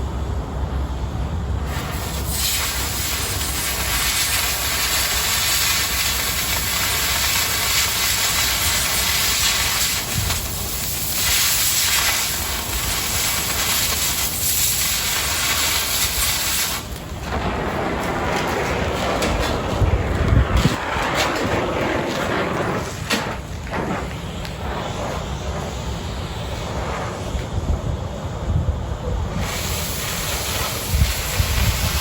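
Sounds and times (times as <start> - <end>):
cutting torch hissing: 1.6 - 32.0
low rumble: 16.0 - 29.4.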